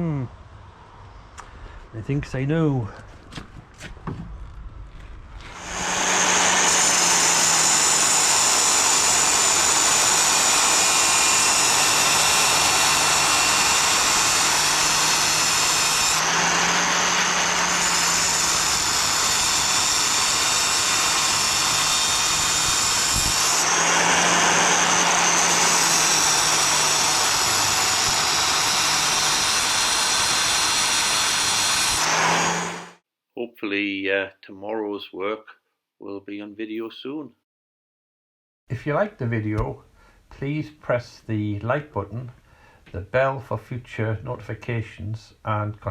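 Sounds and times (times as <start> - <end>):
angle grinder cutting steel: 5.5 - 33.0.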